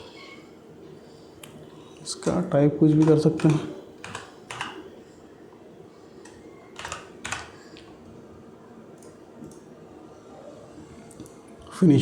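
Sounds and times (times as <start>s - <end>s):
faint steady hum: 0.0s - 12.0s
computer keyboard clicks: 3.0s - 4.8s, 6.2s - 7.6s.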